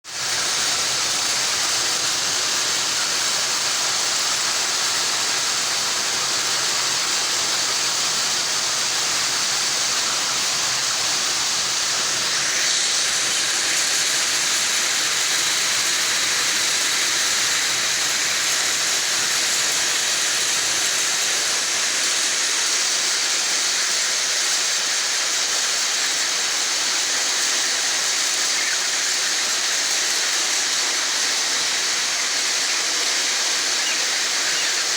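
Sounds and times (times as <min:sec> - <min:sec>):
broiler house rushing hiss: 0:00.1 - 0:34.9.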